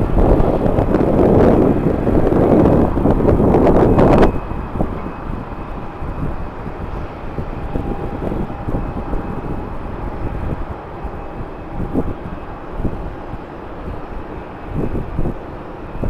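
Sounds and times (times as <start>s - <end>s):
jet engines running at a distance: 0.0s - 16.0s
wind buffeting microphone: 0.0s - 16.0s.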